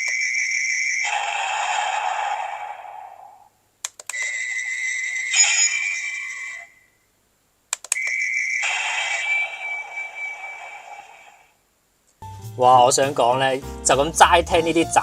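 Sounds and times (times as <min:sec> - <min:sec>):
electronic toy sound effects: 0:04.1 - 0:06.9, 0:07.9 - 0:11.6
steady high tone: 0:04.1 - 0:07.1, 0:07.9 - 0:11.6.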